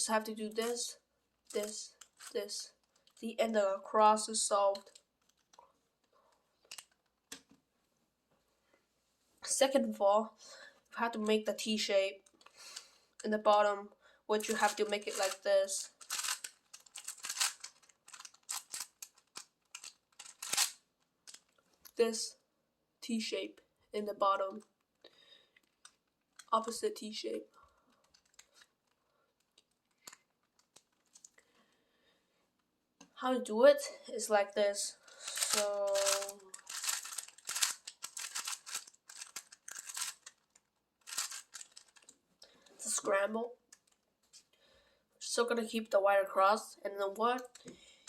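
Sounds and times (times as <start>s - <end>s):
puzzle cube plastic clicks: 14.5s - 21.6s, 35.2s - 42.2s.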